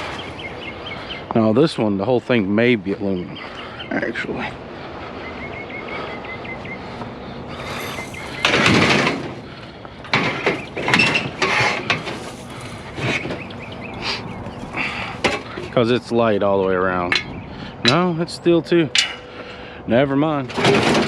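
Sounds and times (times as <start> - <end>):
bird chirping: 7.5 - 9.1
metal chair frames rattling: 7.5 - 9.2, 11.0 - 13.8.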